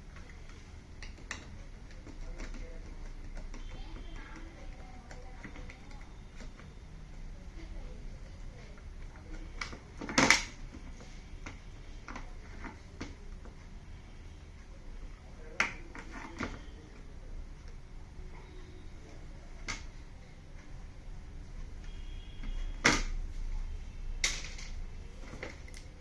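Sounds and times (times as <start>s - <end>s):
clicks and knocks of parts handled: 24.2s - 26.0s.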